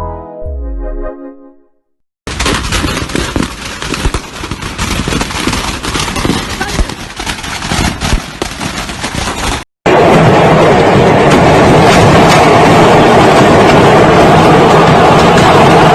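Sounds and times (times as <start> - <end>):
fireworks crackling and banging: 2.3 - 15.9.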